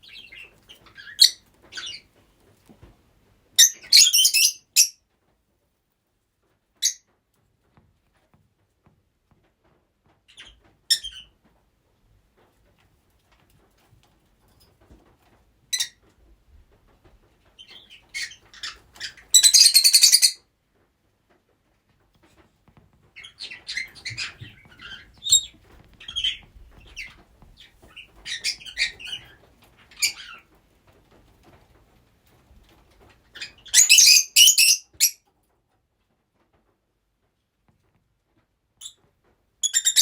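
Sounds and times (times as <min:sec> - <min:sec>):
lovebirds chirping and squawking: 0:00.0 - 0:02.1, 0:03.6 - 0:05.0, 0:10.3 - 0:11.3, 0:15.7 - 0:16.0, 0:17.6 - 0:20.4, 0:23.2 - 0:30.4, 0:33.3 - 0:35.2, 0:39.6 - 0:40.0.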